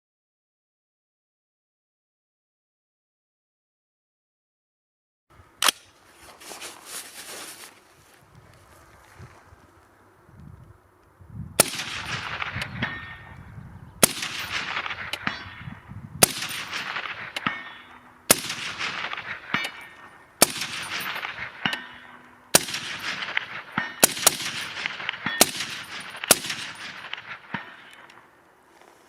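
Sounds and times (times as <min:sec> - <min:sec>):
suppressed rifle shots echoing: 0:11.6 - 0:13.4, 0:14.0 - 0:28.4.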